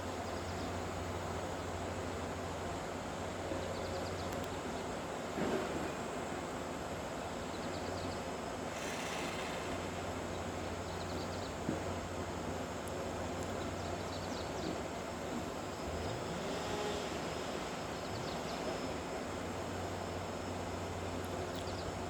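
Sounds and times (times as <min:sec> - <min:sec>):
bulldozer diesel engine droning: 0:15.8 - 0:20.3.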